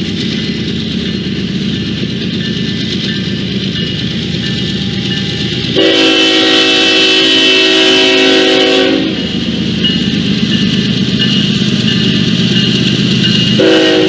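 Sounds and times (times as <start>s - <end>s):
train rumbling past: 0.0s - 14.0s
wheel noise on rails: 0.0s - 14.0s
locomotive air horn: 5.7s - 9.4s, 13.6s - 14.0s.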